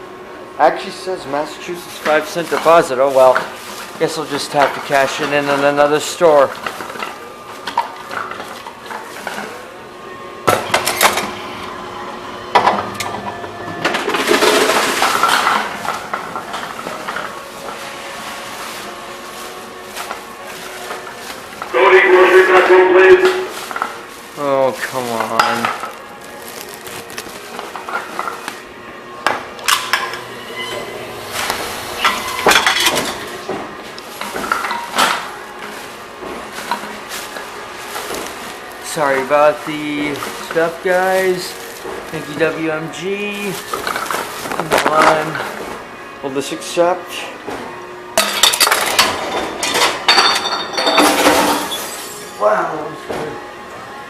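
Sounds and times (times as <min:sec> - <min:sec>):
bottles and cans clinking: 0:13.8 - 0:17.4, 0:25.0 - 0:28.6, 0:32.0 - 0:42.7, 0:43.4 - 0:45.7, 0:48.2 - 0:52.4.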